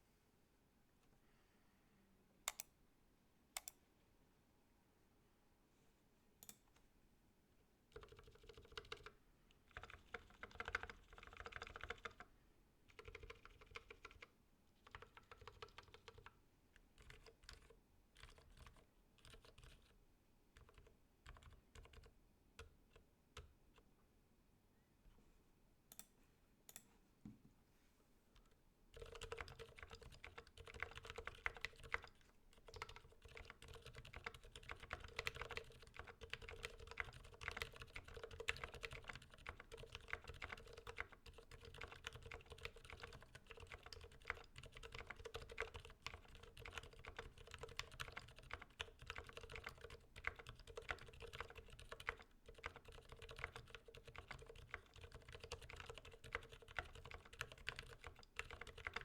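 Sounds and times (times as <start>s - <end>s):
quiet keyboard typing: 2.4s - 2.7s, 3.6s - 3.8s, 6.4s - 6.8s, 7.9s - 12.3s, 12.9s - 23.9s, 28.4s - 59.0s.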